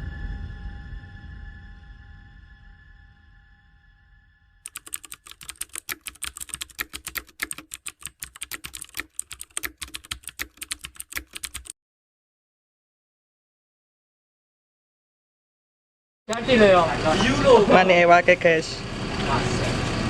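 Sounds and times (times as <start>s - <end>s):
rapid sharp clicks: 4.7s - 11.7s.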